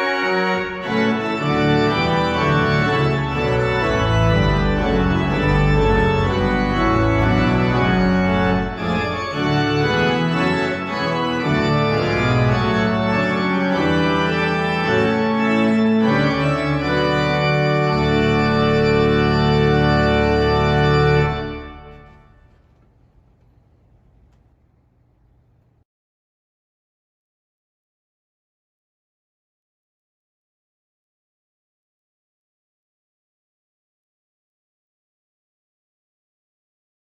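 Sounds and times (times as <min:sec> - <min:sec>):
organ playing chords: 0:00.0 - 0:25.8.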